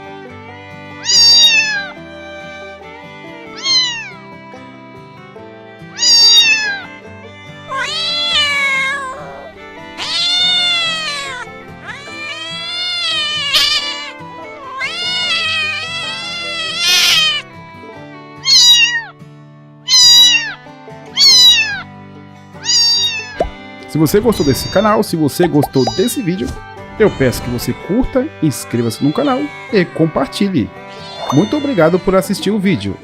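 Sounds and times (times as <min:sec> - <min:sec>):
soft background music: 0:00.0 - 0:33.0
cat meowing: 0:01.0 - 0:02.7, 0:03.5 - 0:04.2, 0:05.9 - 0:06.9, 0:07.6 - 0:17.5, 0:18.4 - 0:19.2, 0:19.9 - 0:21.8, 0:22.6 - 0:27.6, 0:28.7 - 0:30.1, 0:30.8 - 0:32.1.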